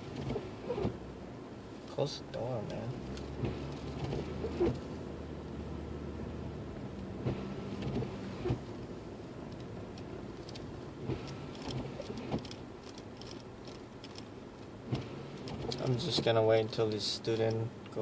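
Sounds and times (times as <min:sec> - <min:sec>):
car engine idling: 0:00.0 - 0:18.0
light clicks and knocks: 0:09.5 - 0:18.0.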